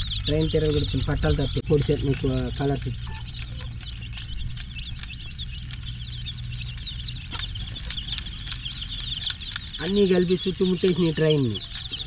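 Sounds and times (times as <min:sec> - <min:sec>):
chicks peeping: 0:00.0 - 0:12.0.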